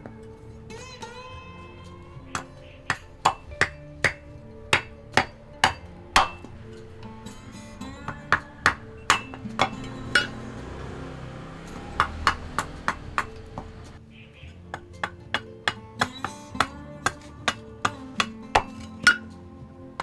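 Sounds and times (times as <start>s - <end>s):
hammer striking steel blade: 2.3s - 6.8s, 8.1s - 10.5s, 11.8s - 13.7s, 14.8s - 19.4s.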